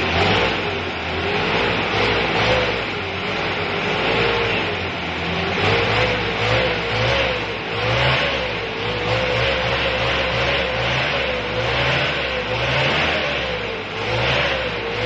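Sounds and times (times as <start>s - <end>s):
diesel engine revving: 0.0s - 15.0s.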